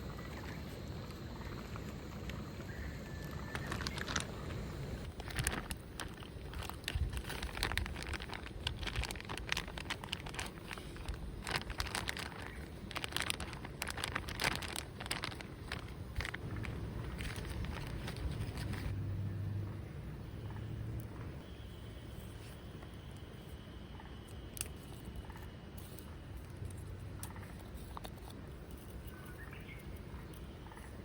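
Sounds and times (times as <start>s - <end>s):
crackling and rustling: 0.1s - 19.1s, 24.6s - 31.0s
low rumble: 16.2s - 21.4s.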